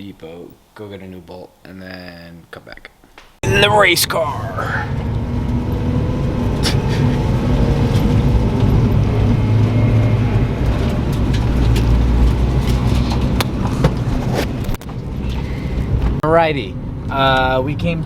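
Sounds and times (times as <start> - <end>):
car engine drone: 3.4 - 14.1
road noise: 3.4 - 17.2.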